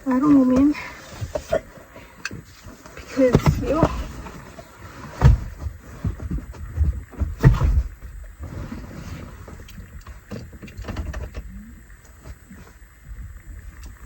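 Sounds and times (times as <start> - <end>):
vehicle low rumble: 0.0 - 14.0
knocks and rattles from bumps: 2.3 - 11.5.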